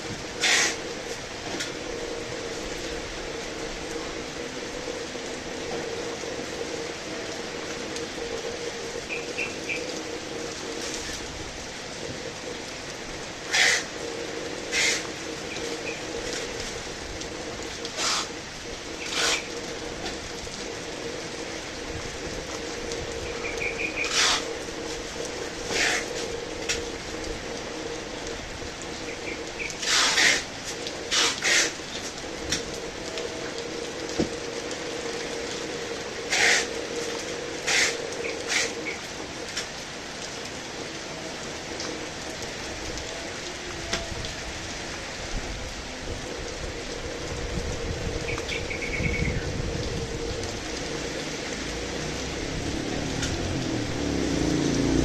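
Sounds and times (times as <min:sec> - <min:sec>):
heavy rain falling: 0:00.0 - 0:55.0
rushes of noise: 0:00.0 - 0:55.0.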